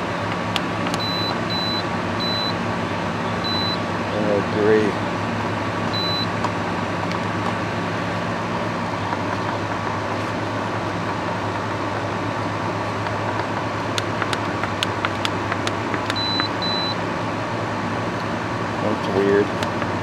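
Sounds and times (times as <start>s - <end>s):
dehumidifier fan and compressor hum: 0.0s - 20.0s
short high beeps: 1.0s - 2.6s, 3.3s - 3.9s, 5.9s - 6.3s, 16.1s - 17.0s.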